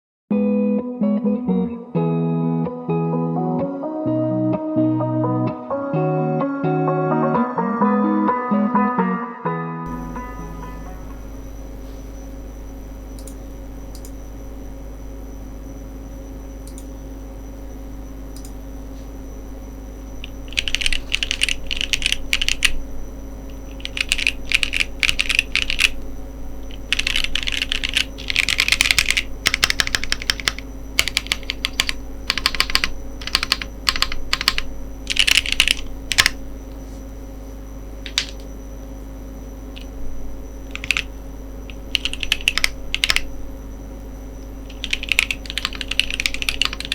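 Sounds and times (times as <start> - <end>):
steady background hum: 9.9 - 46.9
mechanical keyboard typing: 20.2 - 22.8, 23.5 - 26.0, 26.7 - 36.4, 38.1 - 38.5, 40.7 - 41.1, 41.7 - 43.3, 44.7 - 46.9.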